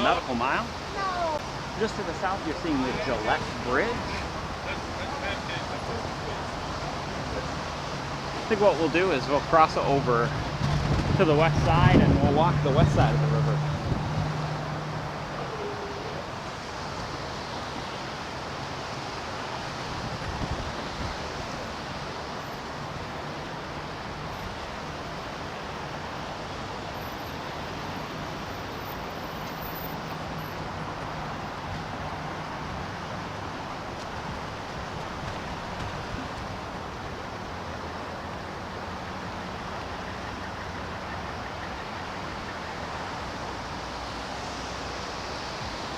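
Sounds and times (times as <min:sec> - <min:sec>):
street traffic noise: 0:00.0 - 0:45.9.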